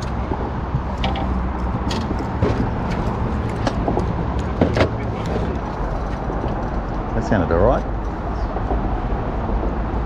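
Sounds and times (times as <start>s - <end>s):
sharp clicks and knocks: 0.0s - 7.1s
low engine hum: 0.0s - 10.0s.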